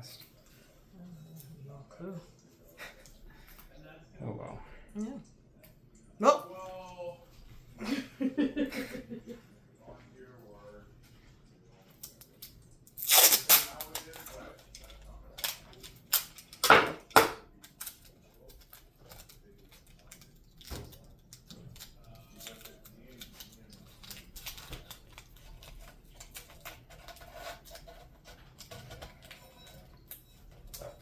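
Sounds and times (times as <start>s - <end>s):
knocks and clicks from tools: 16.6s - 17.4s.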